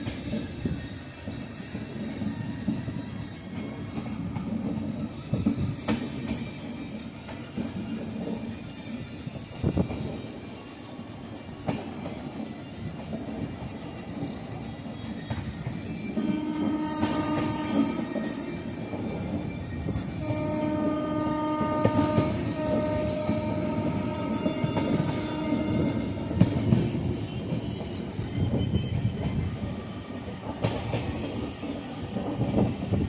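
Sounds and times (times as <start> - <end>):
train rumbling along track: 0.0 - 33.0
train horn blast: 16.2 - 18.5, 20.2 - 26.6.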